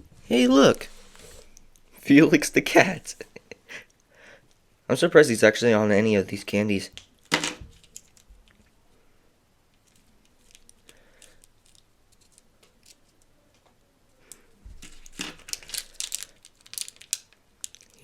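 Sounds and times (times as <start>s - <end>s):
candy wrappers crinkling: 6.9s - 8.7s, 9.7s - 13.4s, 14.8s - 18.0s
packaging rustling: 7.2s - 8.6s, 9.8s - 13.3s, 14.7s - 18.0s.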